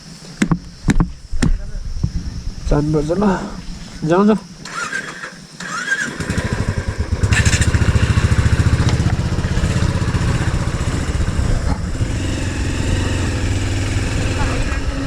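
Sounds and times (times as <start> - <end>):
motorcycle engine revving: 4.6 - 15.0.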